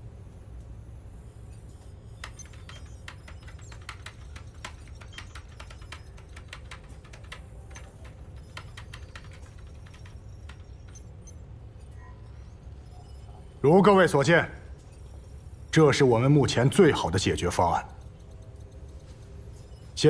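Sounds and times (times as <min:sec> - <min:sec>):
steady low hum: 0:00.0 - 0:20.0
keyboard typing: 0:01.6 - 0:13.5.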